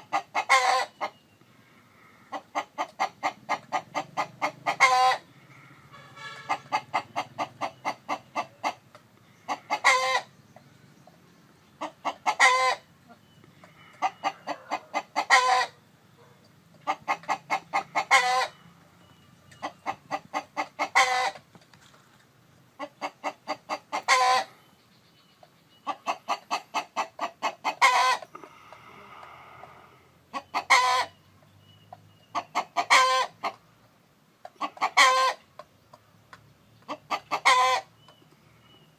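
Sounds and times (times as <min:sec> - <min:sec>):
chicken clucking and squawking: 0:00.0 - 0:01.3, 0:02.0 - 0:21.9, 0:22.7 - 0:33.7, 0:34.4 - 0:35.9, 0:36.8 - 0:38.9.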